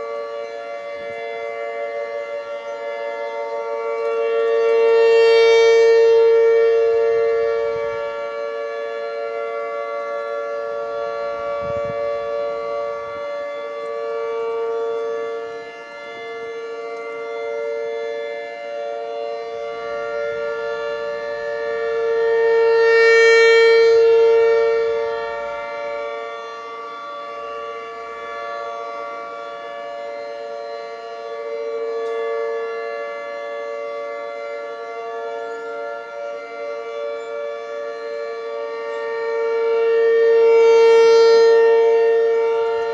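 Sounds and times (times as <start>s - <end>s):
outdoor warning sirens steady tone: 0.0s - 42.9s.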